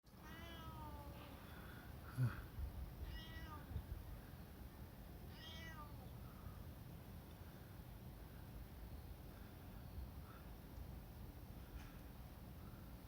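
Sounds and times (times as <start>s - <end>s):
cat meowing: 0.2s - 1.2s, 3.0s - 3.7s, 5.3s - 6.1s.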